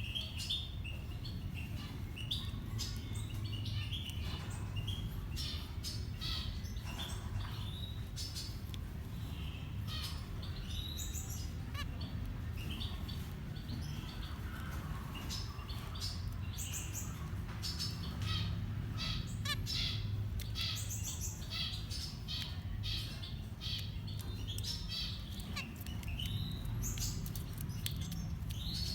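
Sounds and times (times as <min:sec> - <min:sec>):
small finches chirping: 0:00.0 - 0:28.9.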